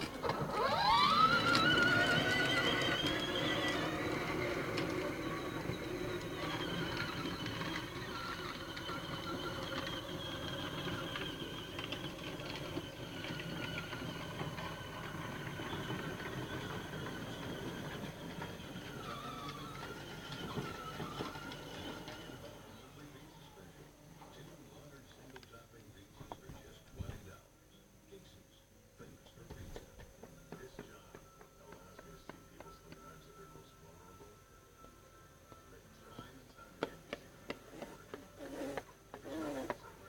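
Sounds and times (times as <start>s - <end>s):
electric motors whining: 0.0s - 23.8s, 36.8s - 40.0s.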